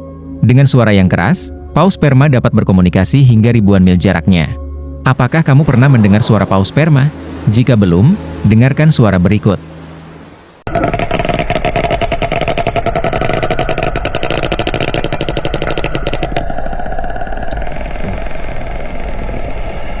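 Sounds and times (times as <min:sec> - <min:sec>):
whale clicks underwater: 0:10.7 - 0:20.0.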